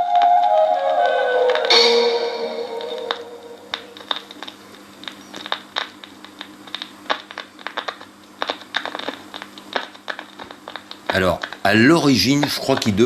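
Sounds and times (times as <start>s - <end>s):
music from record player: 0.0s - 4.3s
record player low hum: 0.0s - 13.0s.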